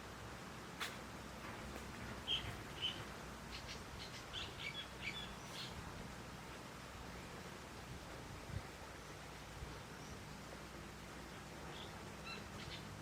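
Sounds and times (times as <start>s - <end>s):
faint background hiss: 0.0s - 13.0s
bird calling and chirping: 2.2s - 5.8s, 11.7s - 13.0s.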